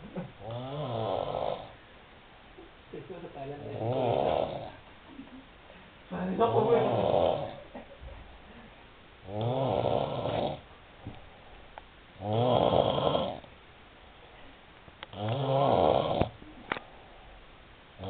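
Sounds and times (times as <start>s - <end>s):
man snoring loudly: 0.4s - 1.8s, 3.7s - 4.8s, 6.6s - 7.6s, 9.3s - 10.6s, 12.2s - 13.5s, 15.1s - 16.4s.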